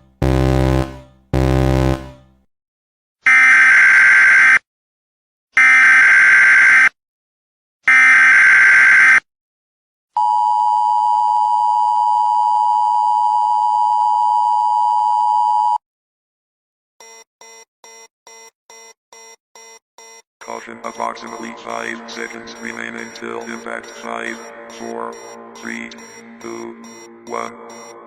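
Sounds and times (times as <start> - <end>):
electronic alarm buzzing tones: 0.0 - 2.2, 17.0 - 28.0
steady low alarm tone: 0.0 - 2.3, 17.0 - 28.0.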